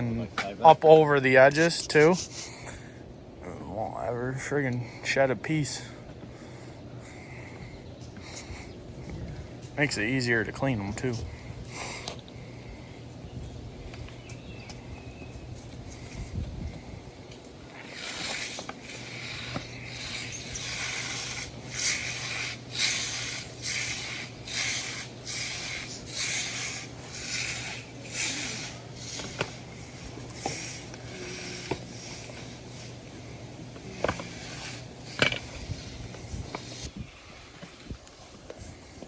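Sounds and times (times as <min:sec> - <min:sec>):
steady low hum: 0:00.0 - 0:39.0
rhythmic rasping rub strokes: 0:17.7 - 0:37.0.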